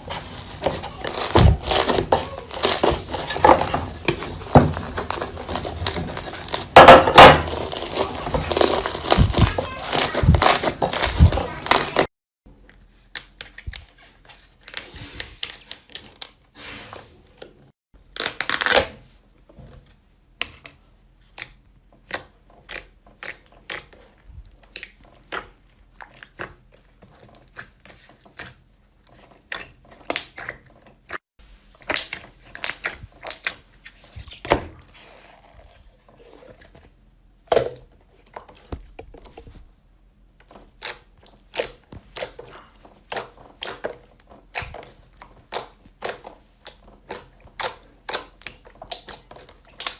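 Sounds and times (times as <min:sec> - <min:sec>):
slime stretching and tearing: 0:00.1 - 0:12.1, 0:18.1 - 0:18.9
slime popping and crackling: 0:00.2 - 0:12.1, 0:40.4 - 0:49.9.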